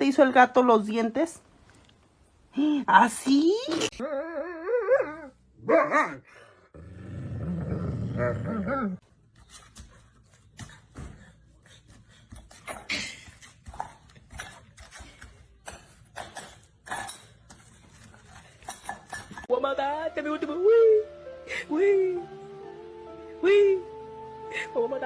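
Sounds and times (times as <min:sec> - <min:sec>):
dog growling: 0:05.6 - 0:09.0.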